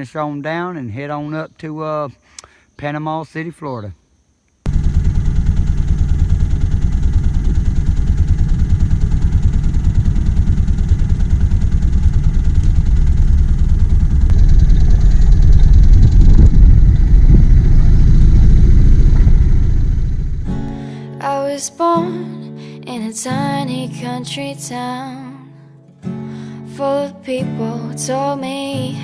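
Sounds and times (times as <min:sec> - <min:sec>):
boat engine running: 0:04.7 - 0:20.8.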